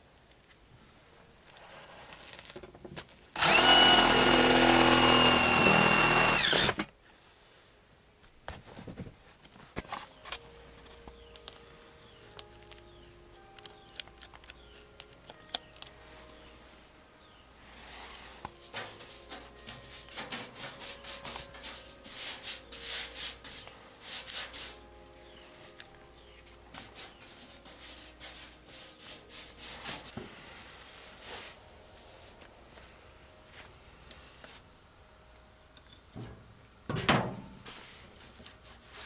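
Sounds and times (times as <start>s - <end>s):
rubbing and scraping on a surface: 17.7s - 24.8s, 26.2s - 32.4s.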